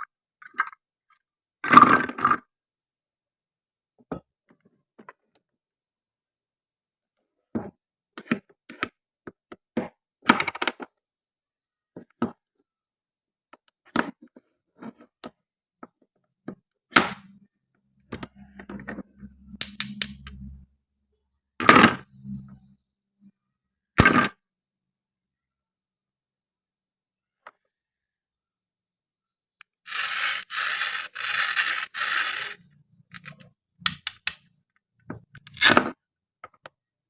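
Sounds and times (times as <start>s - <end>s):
toy food clicking and knocking: 29.6s - 34.6s.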